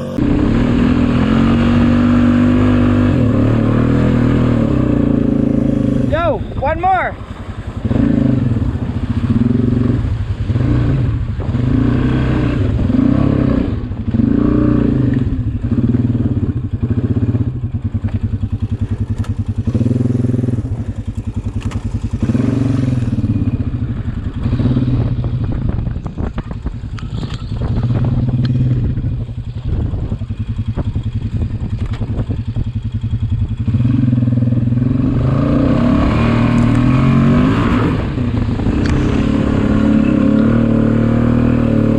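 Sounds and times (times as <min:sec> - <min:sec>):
engine revving: 0:00.0 - 0:25.9, 0:33.0 - 0:41.9.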